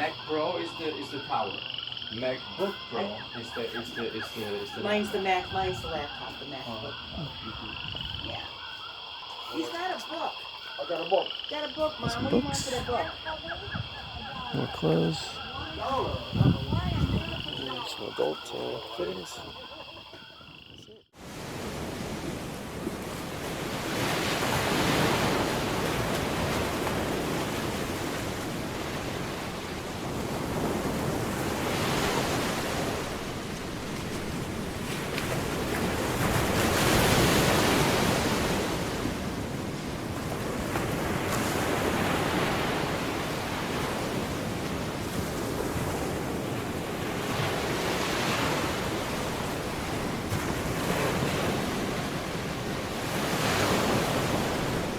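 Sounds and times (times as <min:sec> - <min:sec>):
waves washing in: 0:11.8 - 0:20.1, 0:21.2 - 0:54.9.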